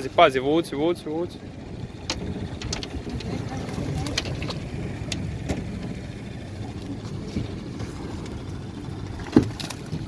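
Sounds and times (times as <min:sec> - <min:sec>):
boat engine low rumble: 0:00.0 - 0:10.0
sharp clicks and knocks: 0:02.0 - 0:03.3.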